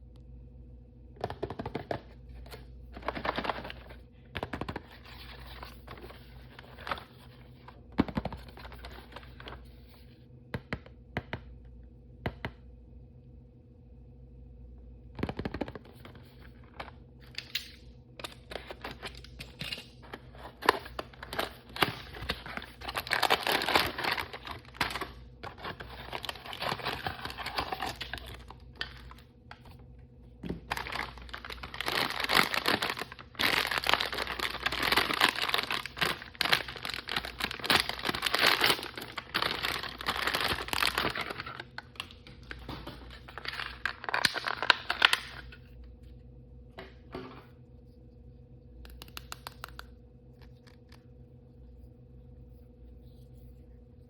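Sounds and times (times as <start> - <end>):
plastic wrappers rustling and tearing: 17.3 - 29.7, 30.5 - 45.6.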